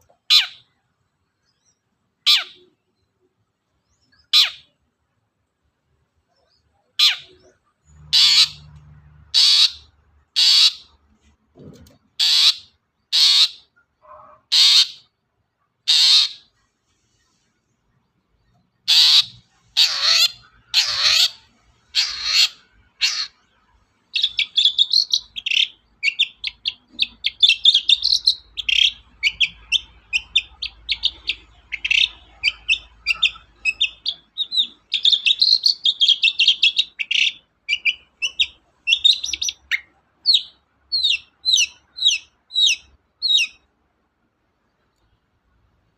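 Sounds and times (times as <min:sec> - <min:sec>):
bird harsh calls: 0:00.3 - 0:00.7, 0:02.2 - 0:02.8, 0:03.9 - 0:04.8, 0:06.4 - 0:11.0, 0:12.2 - 0:15.1, 0:15.9 - 0:16.6, 0:18.8 - 0:43.7.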